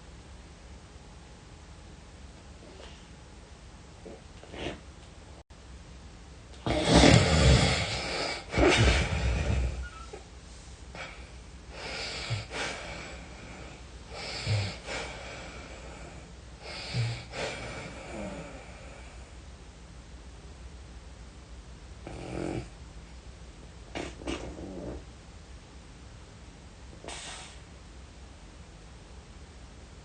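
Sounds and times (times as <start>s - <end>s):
person snoring heavily: 6.6s - 10.2s, 11.0s - 19.2s, 22.0s - 22.7s, 24.0s - 25.0s.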